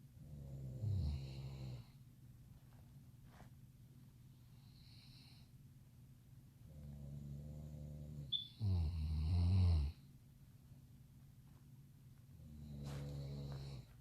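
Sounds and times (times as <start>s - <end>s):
man snoring: 0.2s - 1.9s, 7.0s - 10.0s, 12.4s - 13.9s.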